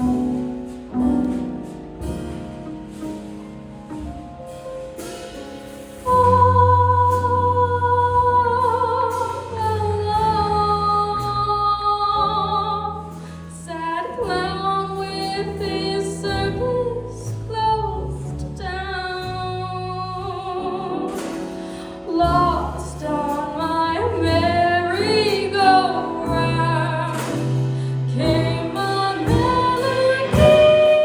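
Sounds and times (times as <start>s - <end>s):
low bass notes: 0.0s - 31.0s
piano: 0.0s - 31.0s
woman singing with vibrato: 6.1s - 21.4s, 22.0s - 31.0s.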